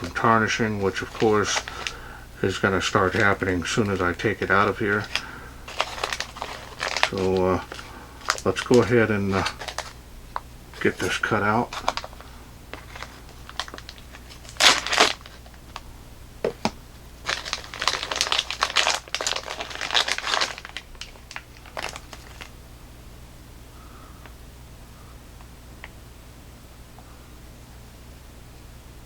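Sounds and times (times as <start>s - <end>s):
sharp crackles: 0.0s - 10.0s, 11.7s - 15.9s, 17.2s - 22.5s
plastic wrapping crinkling: 0.0s - 22.6s.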